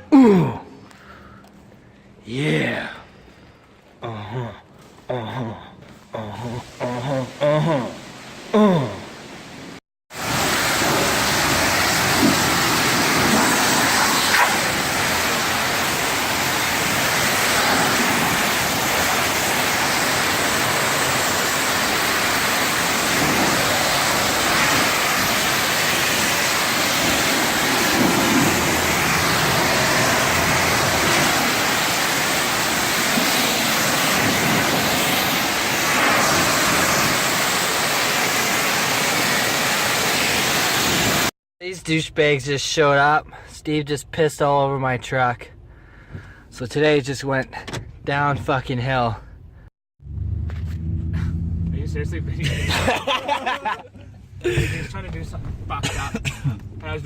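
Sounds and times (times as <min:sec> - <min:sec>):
pressure washer water spray hiss: 0:10.1 - 0:41.3.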